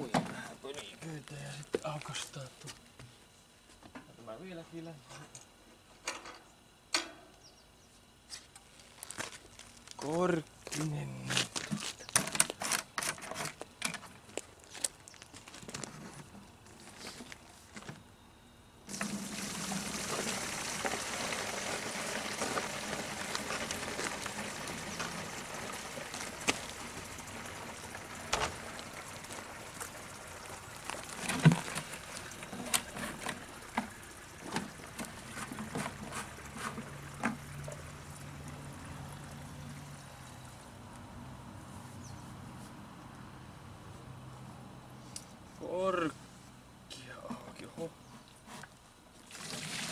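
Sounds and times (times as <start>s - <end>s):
coolant pouring into container: 18.9s - 40.4s, 49.2s - 49.9s.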